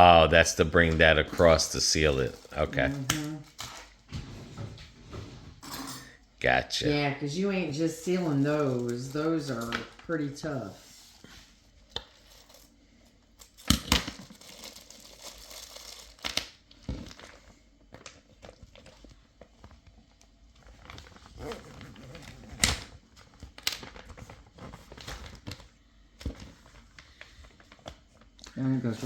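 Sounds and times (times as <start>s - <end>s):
plastic bag crinkling: 0.8s - 4.0s, 7.9s - 10.2s, 13.5s - 25.7s.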